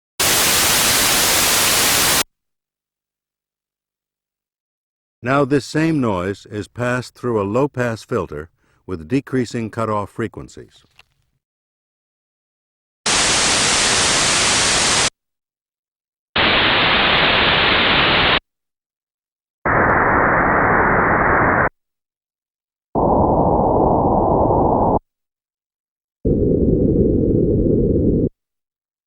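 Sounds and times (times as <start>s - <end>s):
filtered white noise bursts: 0.2s - 2.2s.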